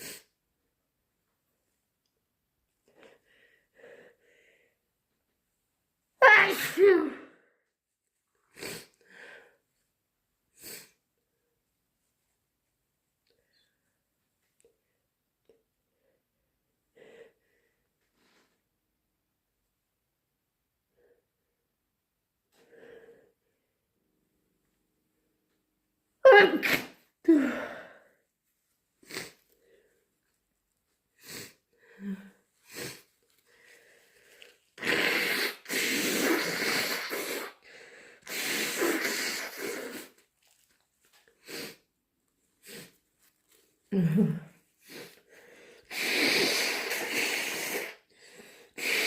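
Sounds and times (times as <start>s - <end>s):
person blowing nose: 0.0s - 0.4s, 8.5s - 9.0s, 10.6s - 11.0s, 26.3s - 27.8s, 29.0s - 29.5s, 31.2s - 31.6s, 32.6s - 33.4s, 34.2s - 40.6s, 41.4s - 41.9s, 42.6s - 43.0s, 44.0s - 49.0s
person sneezing loudly: 6.2s - 7.3s, 26.3s - 27.7s, 34.8s - 37.6s, 38.3s - 40.2s
person sniffling: 29.0s - 29.6s, 31.2s - 40.6s, 41.4s - 41.9s, 43.9s - 49.0s.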